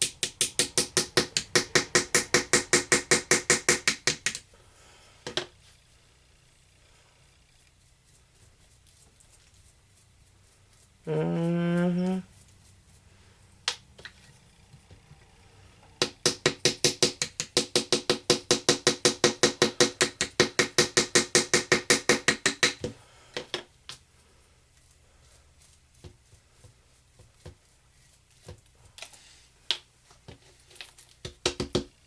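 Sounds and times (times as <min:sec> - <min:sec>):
hammer tapping on chisel: 0:00.0 - 0:04.4, 0:16.0 - 0:23.6, 0:31.2 - 0:32.0.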